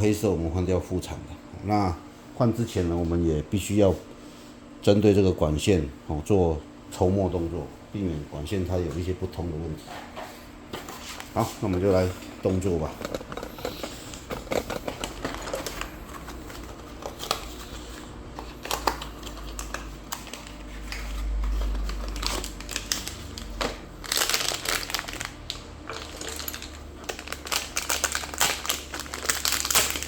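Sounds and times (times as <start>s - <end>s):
plastic packaging crinkling: 11.4s - 30.0s.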